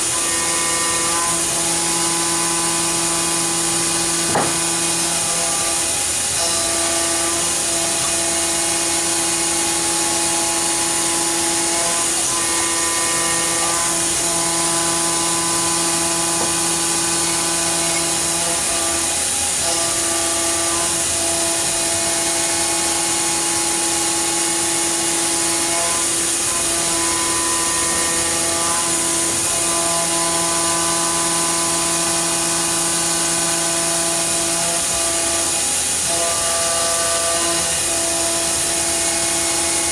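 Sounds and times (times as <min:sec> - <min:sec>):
high machine hiss: 0:00.0 - 0:39.9
motor whines: 0:00.1 - 0:31.3.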